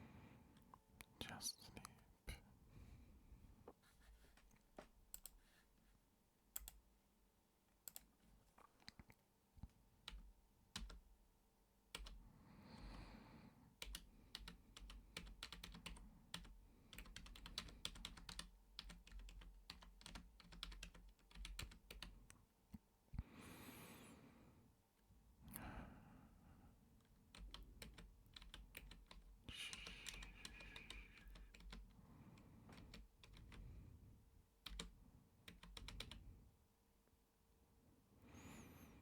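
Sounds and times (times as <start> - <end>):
computer keyboard typing: 5.1 - 5.4, 6.6 - 6.8, 7.8 - 8.1, 10.0 - 11.1, 11.9 - 12.2, 13.8 - 22.3, 27.3 - 33.6, 34.6 - 36.2
soft breathy hiss: 29.4 - 34.4.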